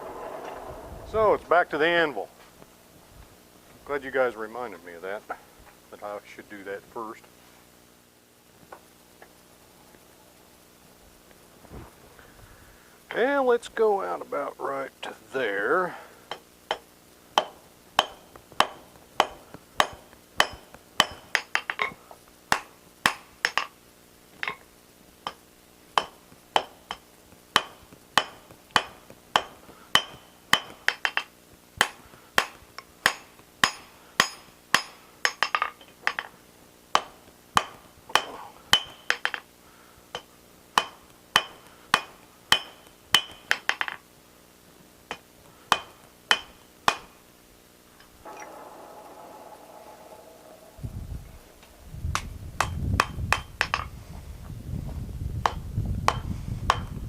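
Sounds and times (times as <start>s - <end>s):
hammer striking steel on anvil: 16.3s - 23.7s, 24.4s - 25.4s, 26.0s - 36.3s, 37.0s - 39.5s, 40.1s - 44.0s, 45.1s - 47.2s, 48.2s - 53.9s, 56.1s - 56.9s.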